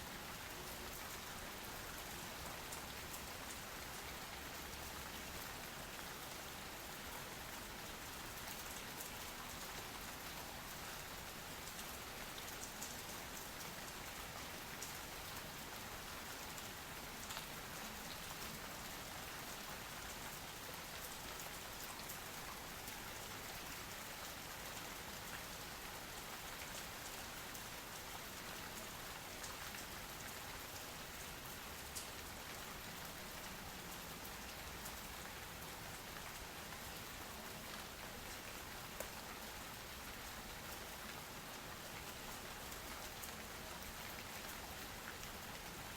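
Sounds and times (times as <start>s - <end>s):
steady rain falling: 0.0s - 45.9s
raindrops ticking on hard surfaces: 0.2s - 45.9s.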